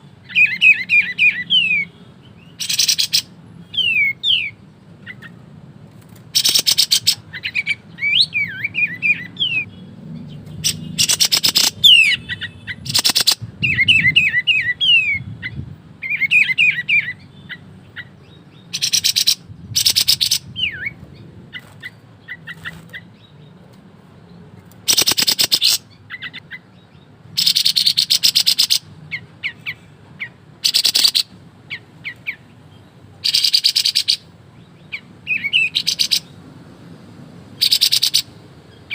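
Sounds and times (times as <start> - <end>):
songbird rattling bursts: 6.0 - 7.3, 10.4 - 13.4, 24.7 - 25.8
bird whistled chirps: 10.6 - 17.6.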